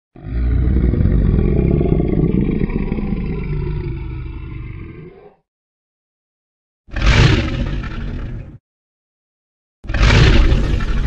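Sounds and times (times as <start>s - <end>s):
dinosaur roar: 0.2s - 5.4s, 6.9s - 8.6s, 9.9s - 11.0s.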